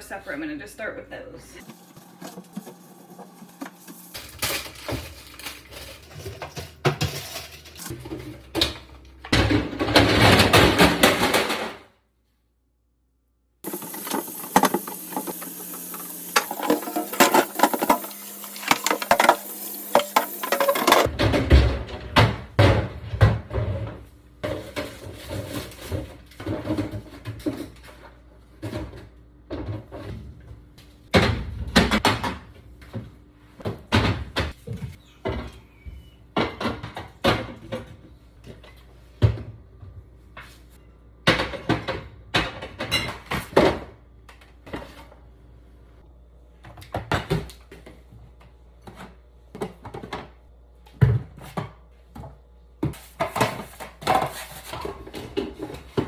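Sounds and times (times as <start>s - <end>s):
food containers and drawers clattering: 1.6s - 11.9s, 13.6s - 45.3s, 46.6s - 56.0s.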